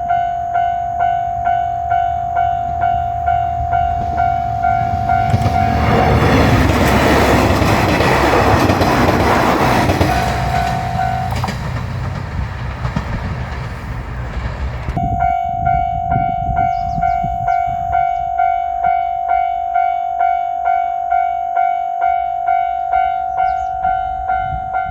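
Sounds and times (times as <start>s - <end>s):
level crossing bell ringing: 0.0s - 6.1s, 10.0s - 11.5s, 15.0s - 24.9s
train running over crossing: 0.0s - 24.9s.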